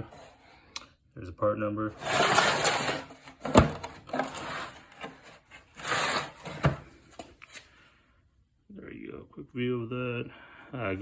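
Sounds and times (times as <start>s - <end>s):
tools rubbing and sliding in case: 2.0s - 7.6s.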